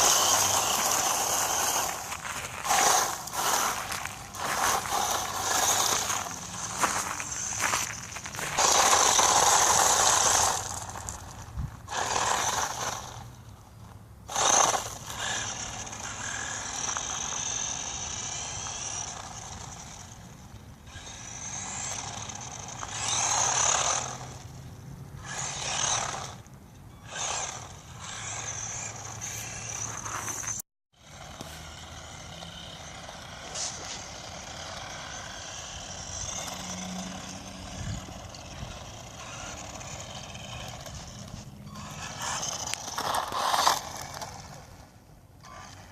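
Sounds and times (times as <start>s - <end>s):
electric motor whining: 0.0s - 13.6s, 14.2s - 45.9s.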